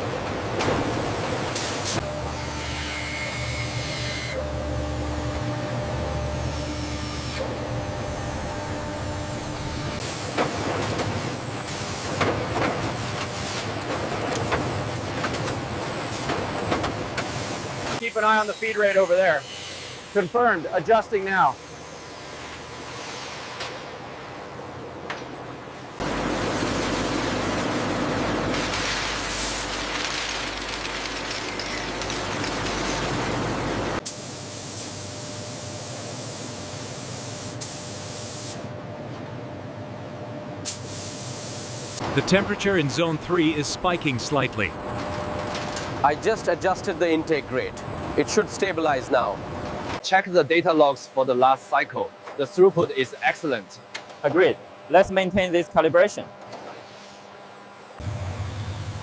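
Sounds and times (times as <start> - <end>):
factory machinery humming: 0.0 - 34.1, 41.6 - 50.0, 57.3 - 59.0.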